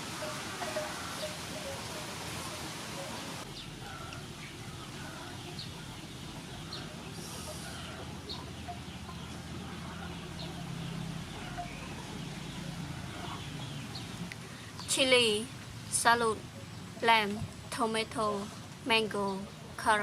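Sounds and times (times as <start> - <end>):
chickens clucking: 0.0 - 14.5
low steady hum: 0.0 - 20.0.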